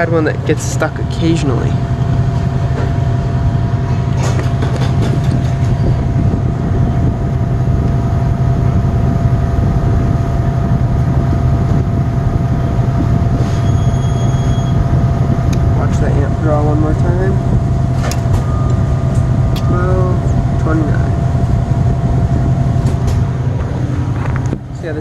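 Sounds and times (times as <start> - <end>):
compressor humming: 0.0 - 25.0.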